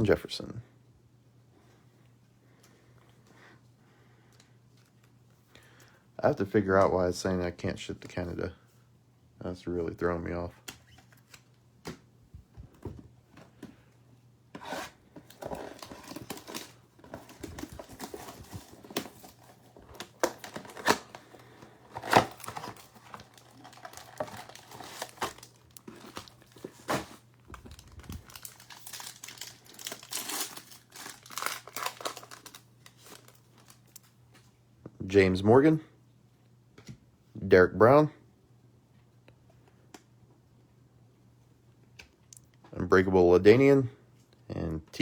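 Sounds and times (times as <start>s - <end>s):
plastic wrapper tearing and crinkling: 15.3s - 34.1s.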